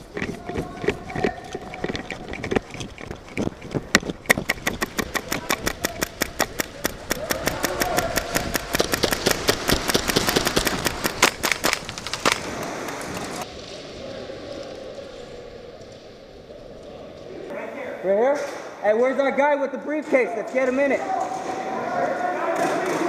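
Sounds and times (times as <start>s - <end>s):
airsoft guns firing rapidly: 4.2s - 13.2s.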